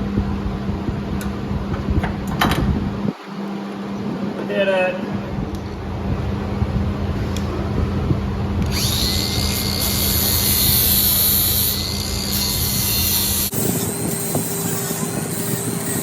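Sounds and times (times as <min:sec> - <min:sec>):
steady low hum: 0:00.0 - 0:16.0
power tool whining: 0:07.4 - 0:16.0.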